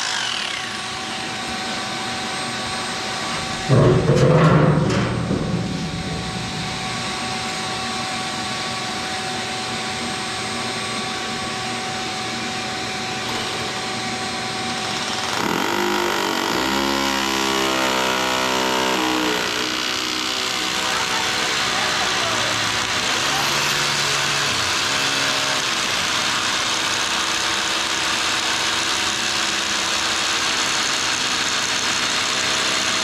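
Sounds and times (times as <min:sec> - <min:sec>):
steady machine noise: 0:00.0 - 0:33.0
loud clatter: 0:03.4 - 0:07.8.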